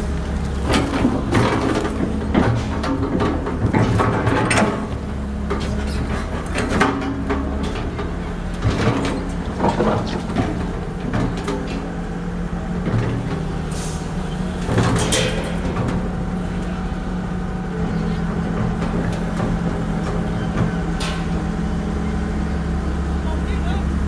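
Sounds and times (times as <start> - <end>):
excavator engine running: 0.0 - 24.0
metal clanks and knocks: 0.5 - 16.8, 17.8 - 22.8.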